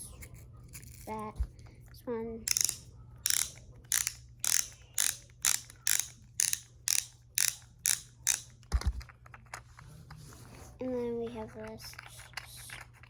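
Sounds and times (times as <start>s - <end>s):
plastic fidget toy clicking: 2.4s - 8.6s.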